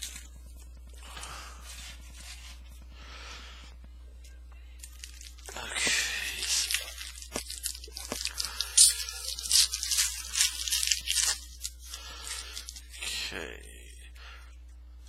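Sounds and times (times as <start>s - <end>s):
foil wrapper tearing and crinkling: 4.8s - 13.2s.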